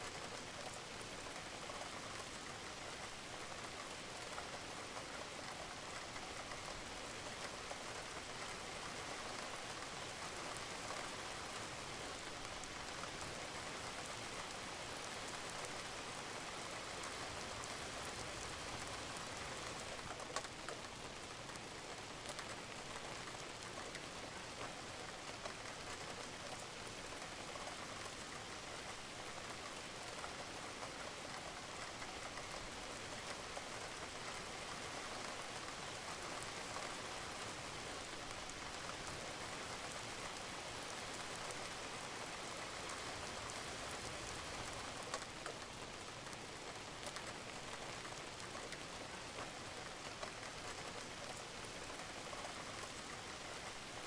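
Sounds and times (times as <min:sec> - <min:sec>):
rain on a roof: 0:00.0 - 0:54.0.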